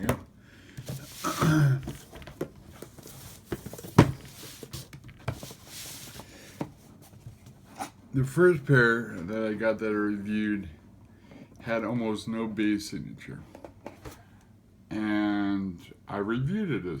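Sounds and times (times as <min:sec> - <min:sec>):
packaging rustling: 0:00.8 - 0:08.0.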